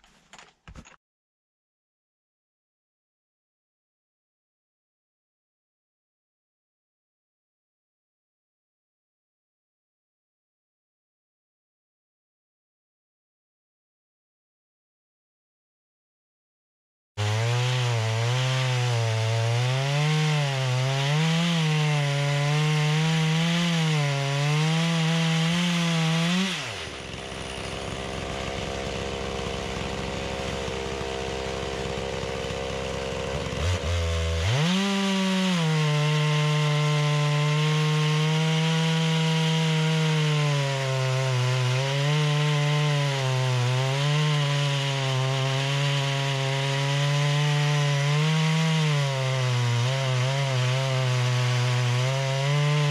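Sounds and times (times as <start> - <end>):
chainsaw cutting wood: 17.2 - 52.9.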